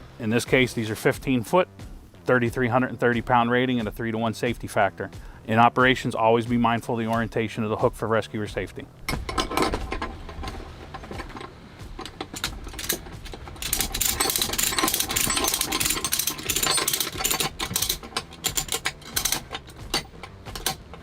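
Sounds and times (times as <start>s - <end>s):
ratchet strap clicking: 9.1s - 21.0s.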